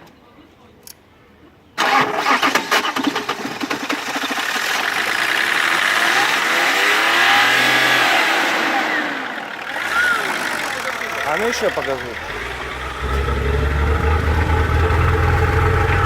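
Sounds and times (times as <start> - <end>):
car engine revving: 4.6 - 16.0.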